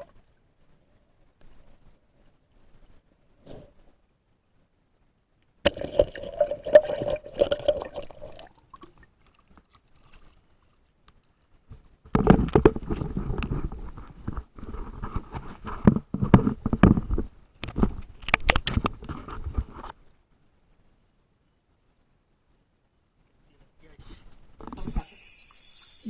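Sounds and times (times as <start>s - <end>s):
water splashing and sloshing: 5.6s - 11.3s.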